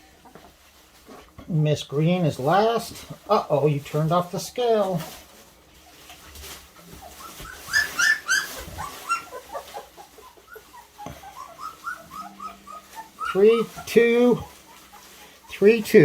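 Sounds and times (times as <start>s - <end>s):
puppy whimpering and squealing: 6.8s - 16.0s.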